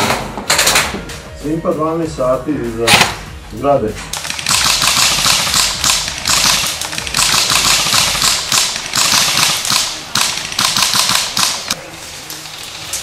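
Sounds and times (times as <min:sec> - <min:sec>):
airsoft guns full-auto bursts: 0:04.2 - 0:11.8.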